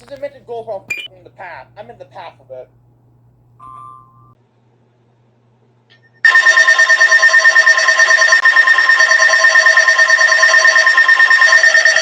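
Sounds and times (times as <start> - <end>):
harsh steady alarm tone: 6.2 - 12.0.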